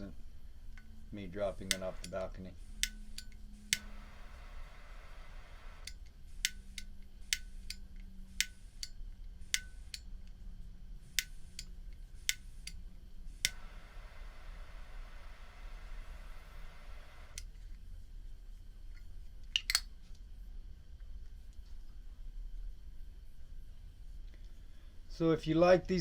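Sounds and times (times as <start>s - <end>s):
faint gas hiss: 0.0s - 26.0s
lighter metallic clicks: 0.7s - 10.4s, 11.1s - 13.8s, 19.6s - 19.9s.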